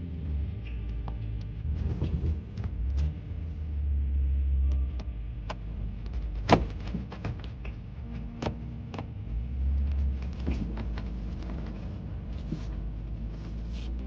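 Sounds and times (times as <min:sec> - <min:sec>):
steady low rumble: 0:00.0 - 0:14.0
knocks clicks and rattles: 0:04.7 - 0:13.4.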